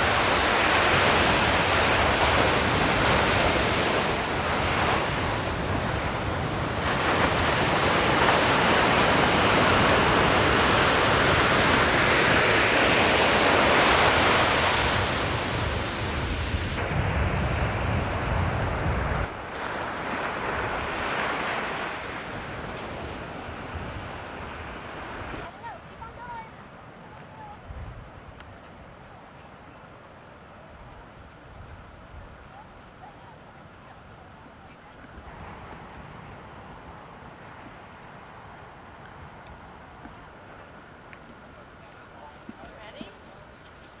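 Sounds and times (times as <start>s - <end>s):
wind buffeting microphone: 0.0s - 26.4s, 27.4s - 28.9s
ocean surf breaking: 0.0s - 27.6s, 32.6s - 44.0s.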